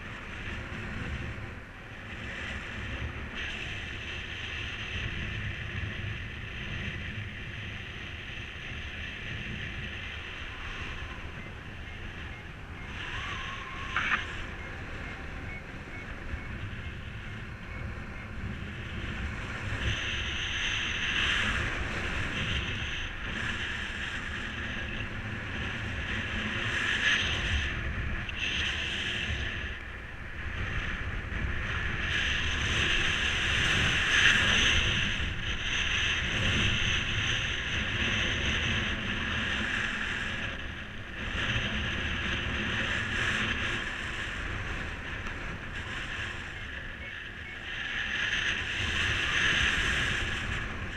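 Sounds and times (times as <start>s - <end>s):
wind rushing over microphone: 0.0s - 50.9s.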